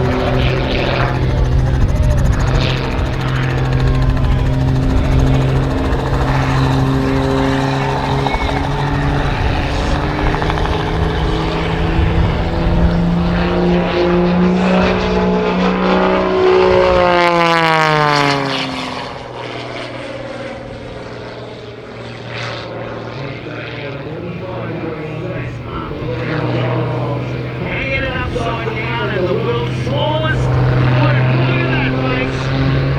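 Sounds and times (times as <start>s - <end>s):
propeller plane engine passing by: 0.0s - 32.9s.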